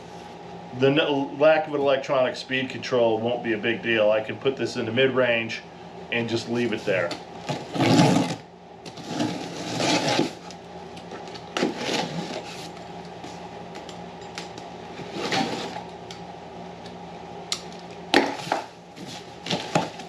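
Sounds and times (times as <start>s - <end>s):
steady low hum: 0.0s - 20.0s
cardboard and styrofoam rustling: 11.6s - 12.8s, 15.0s - 15.8s, 18.2s - 20.0s.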